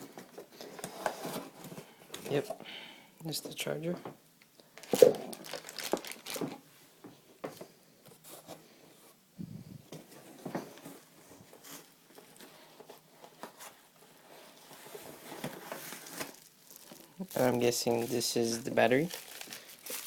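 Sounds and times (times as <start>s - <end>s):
packaging rustling and scraping: 0.0s - 2.4s, 4.8s - 6.6s, 9.9s - 20.0s.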